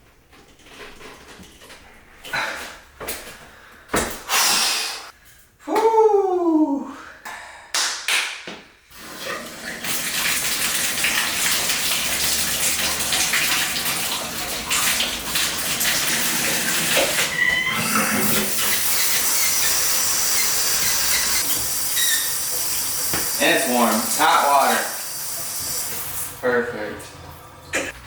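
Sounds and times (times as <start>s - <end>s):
shower water running: 8.9s - 28.0s.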